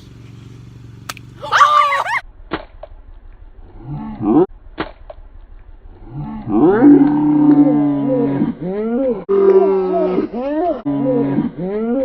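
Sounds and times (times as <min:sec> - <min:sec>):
girl exclaiming oh: 0:01.4 - 0:02.2.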